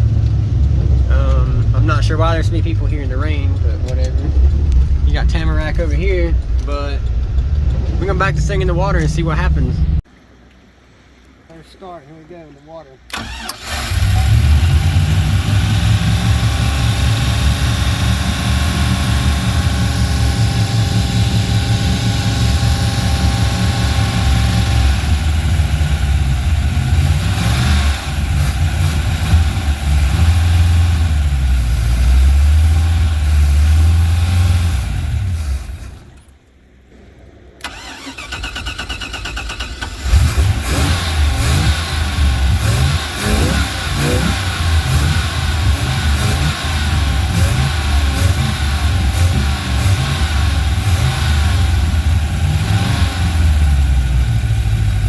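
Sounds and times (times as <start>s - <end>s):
boat engine running and revving: 0.0s - 10.0s, 13.7s - 36.2s, 40.0s - 55.0s.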